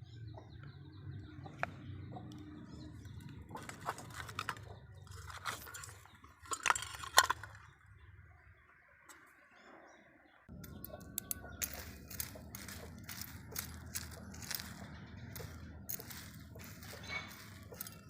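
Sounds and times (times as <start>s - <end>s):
clicking and crunching: 1.6s - 7.9s, 10.5s - 18.0s.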